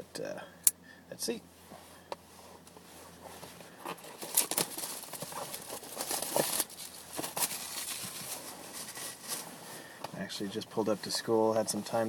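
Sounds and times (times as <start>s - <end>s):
packaging rustling and crinkling: 3.2s - 9.6s.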